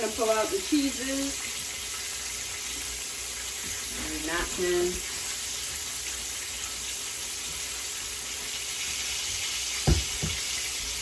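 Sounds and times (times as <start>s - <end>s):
chicken frying in hot oil: 0.0s - 11.0s
dull knocks: 9.8s - 10.4s.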